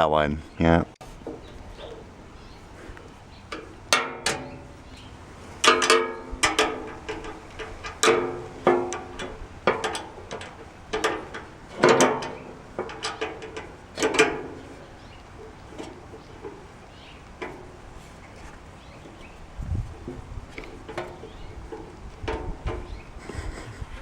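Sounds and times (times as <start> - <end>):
metallic clanks of tool on sheet metal: 2.9 - 18.0, 20.0 - 23.0.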